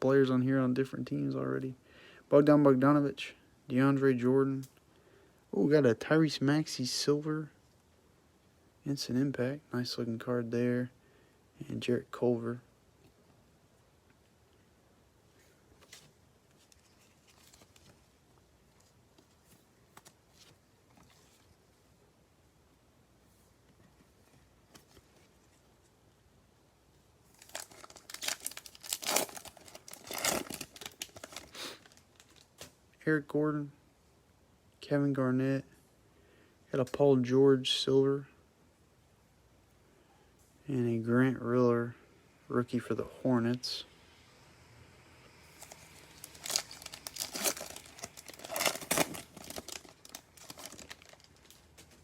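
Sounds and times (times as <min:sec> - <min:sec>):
wrapper tearing and crinkling: 0:27.3 - 0:32.7, 0:45.5 - 0:52.0.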